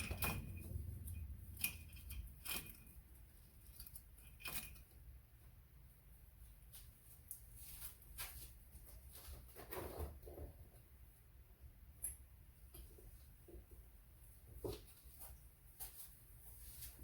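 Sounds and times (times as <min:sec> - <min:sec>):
metal tools clinking: 0:00.0 - 0:05.0.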